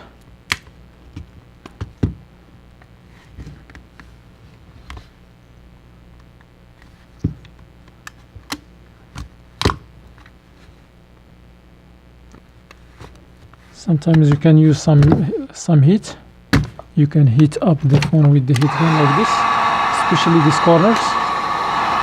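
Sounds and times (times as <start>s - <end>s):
steady low hum: 0.0s - 17.4s.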